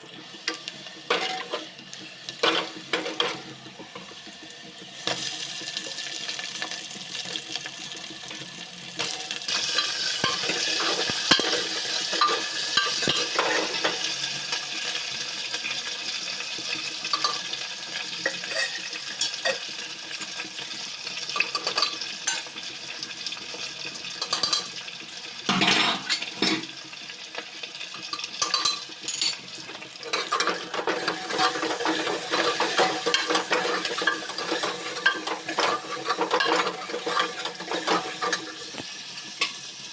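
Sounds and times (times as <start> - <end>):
food sizzling in hot oil: 0.0 - 39.9
spatula clinking against pan: 28.1 - 29.4.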